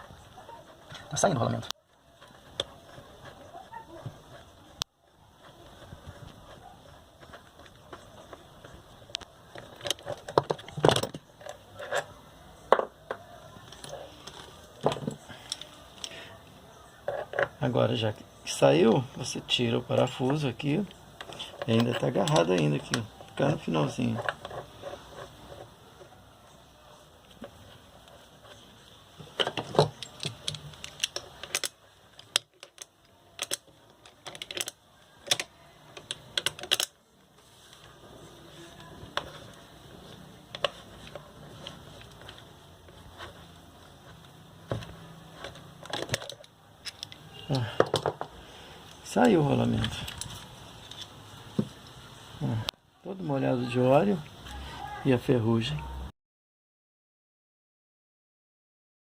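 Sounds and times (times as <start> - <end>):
metal clicks and scrapes: 29.2 - 37.0, 39.1 - 51.2.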